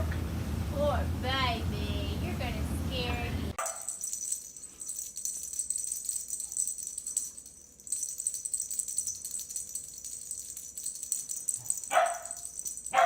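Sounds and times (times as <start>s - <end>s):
fast high-pitched rattling: 3.6s - 13.0s.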